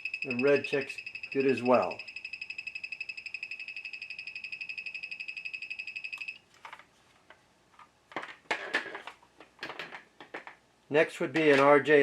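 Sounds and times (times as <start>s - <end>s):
rapid high pulsing beep: 0.0s - 6.4s.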